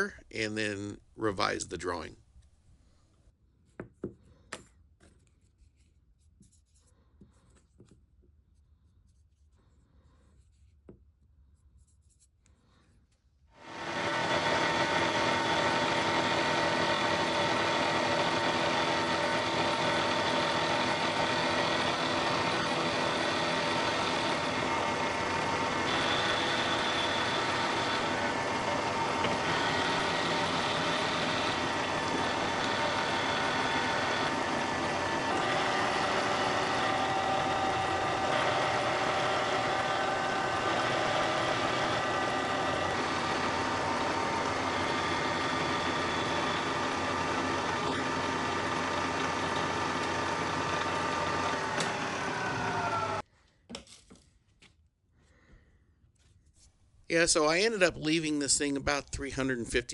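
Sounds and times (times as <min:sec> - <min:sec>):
faint rubbing and handling: 0:04.8 - 0:13.5, 0:56.1 - 0:57.1
milling machine humming: 0:13.6 - 0:53.2.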